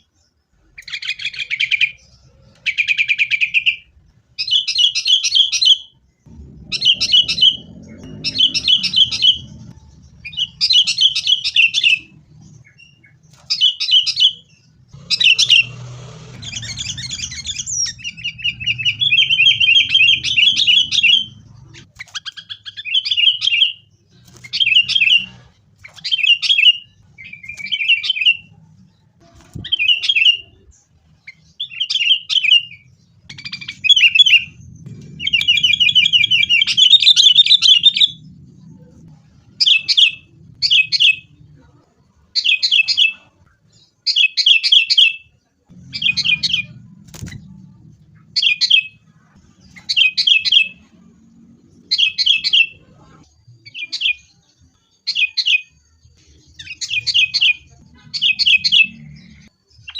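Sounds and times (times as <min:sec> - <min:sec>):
bulbuls chattering calls: 0:06.3 - 0:28.8, 0:31.3 - 0:41.8, 0:45.7 - 0:54.2, 0:56.6 - 0:59.5.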